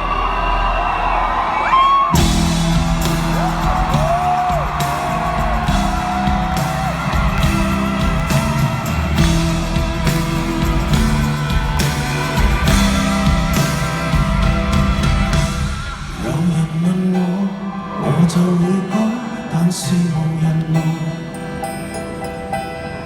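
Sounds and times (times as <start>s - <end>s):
live rock band playing: 2.1s - 16.4s.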